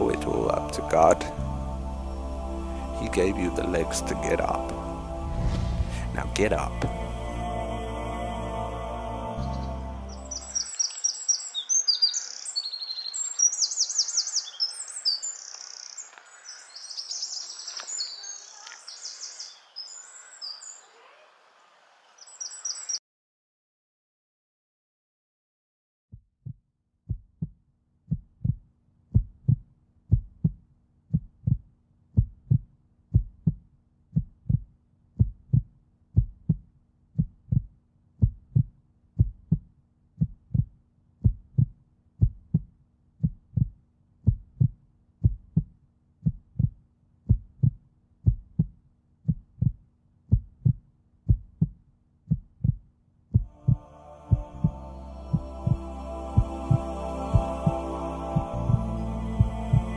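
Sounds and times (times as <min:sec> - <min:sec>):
heartbeat double thump: 0:05.2 - 0:07.2, 0:26.1 - 0:33.6, 0:34.2 - 0:52.8, 0:53.4 - 0:55.8.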